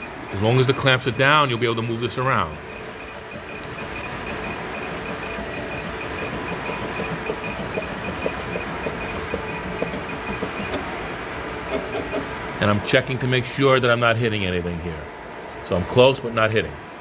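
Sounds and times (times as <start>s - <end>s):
rapid high-pitched beeping: 0.0s - 10.8s, 11.6s - 12.3s
sewing machine hum: 0.0s - 12.5s.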